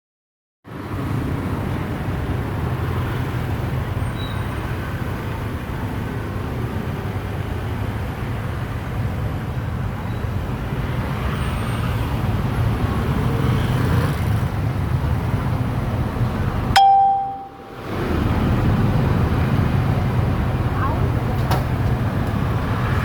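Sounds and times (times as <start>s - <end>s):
sharp metallic ding: 16.8s - 17.8s.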